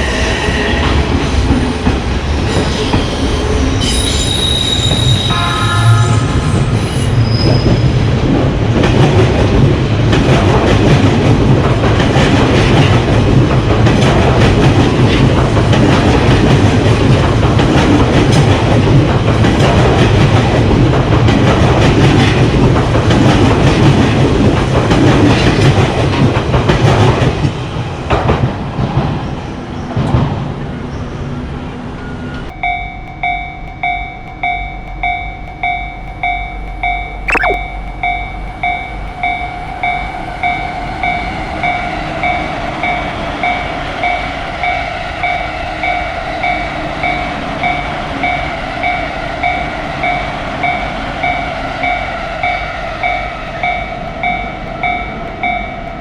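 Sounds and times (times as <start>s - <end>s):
brief falling tone: 37.3s - 37.6s.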